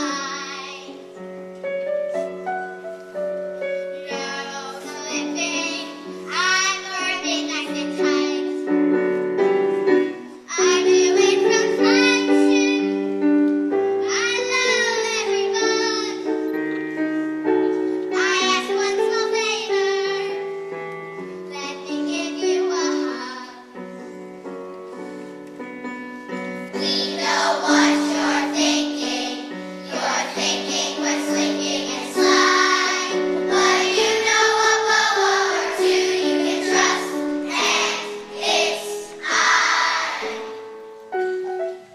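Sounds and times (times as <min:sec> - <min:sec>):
voices singing: 0:26.8 - 0:40.5.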